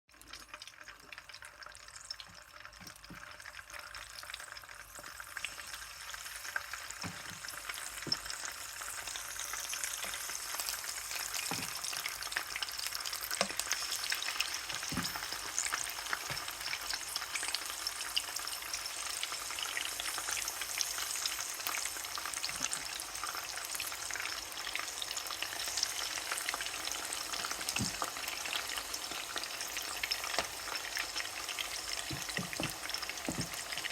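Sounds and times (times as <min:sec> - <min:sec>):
chicken sizzling in hot oil: 0:00.1 - 0:33.9
spatula tapping and scraping: 0:07.0 - 0:08.4, 0:11.3 - 0:12.0, 0:13.3 - 0:16.7, 0:27.7 - 0:28.1, 0:32.0 - 0:33.9.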